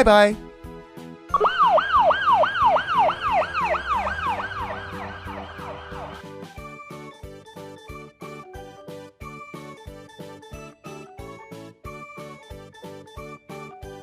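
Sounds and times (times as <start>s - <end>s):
children's background music: 0.0s - 14.0s
siren wailing in fast sweeps: 1.3s - 6.3s.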